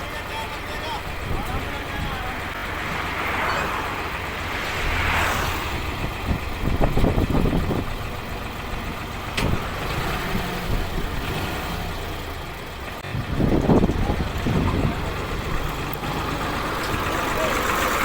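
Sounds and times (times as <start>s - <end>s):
engine idling: 0.0s - 18.0s
knocks and clatter: 6.1s - 10.1s.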